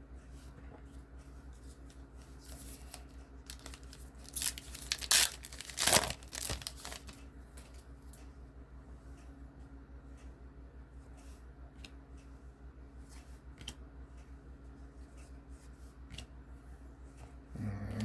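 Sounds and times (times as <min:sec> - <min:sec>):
low electrical hum: 0:00.0 - 0:18.0
wrapper crinkling and tearing: 0:02.8 - 0:07.2.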